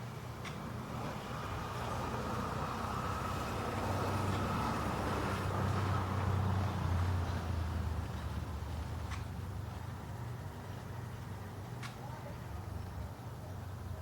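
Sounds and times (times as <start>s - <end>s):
vehicle passing: 0.7s - 11.7s.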